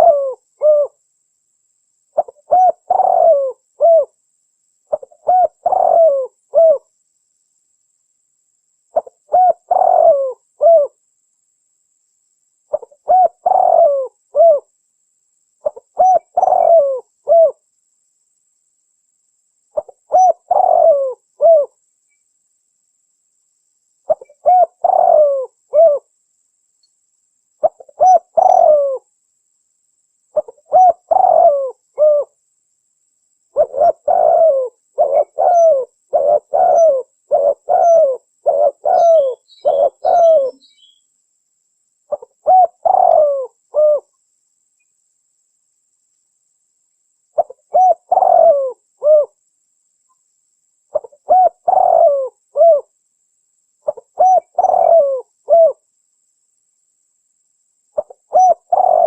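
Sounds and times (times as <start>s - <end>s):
dove cooing: 0.0s - 1.0s, 2.2s - 4.2s, 4.9s - 6.9s, 8.9s - 11.0s, 12.7s - 14.7s, 15.6s - 17.6s, 19.8s - 21.8s, 24.1s - 26.1s, 27.6s - 29.1s, 30.4s - 32.4s, 33.5s - 41.0s, 42.1s - 44.1s, 47.4s - 49.4s, 50.9s - 52.9s, 53.8s - 55.8s, 58.0s - 59.0s.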